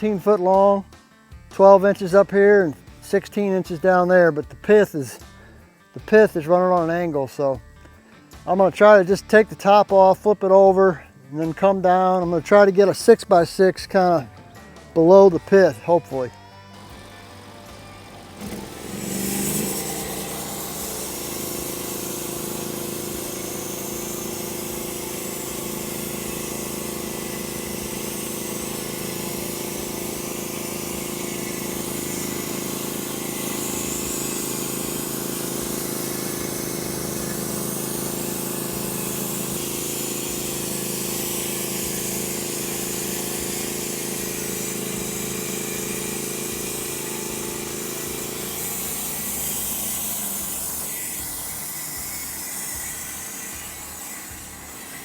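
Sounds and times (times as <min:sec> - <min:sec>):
engine humming: 0:13.9 - 0:52.4
saw blade hissing through wood: 0:15.1 - 0:55.0.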